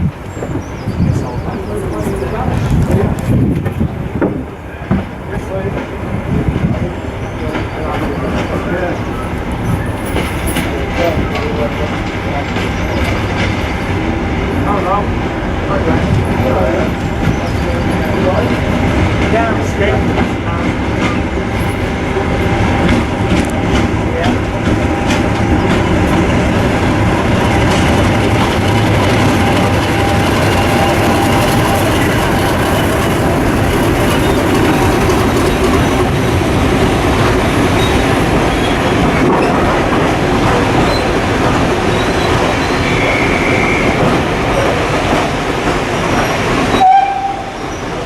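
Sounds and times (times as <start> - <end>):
diesel locomotive engine running: 0.0 - 48.0
wheels clattering over rail joints: 0.1 - 14.0, 15.8 - 43.1
high squeal: 41.9 - 44.0.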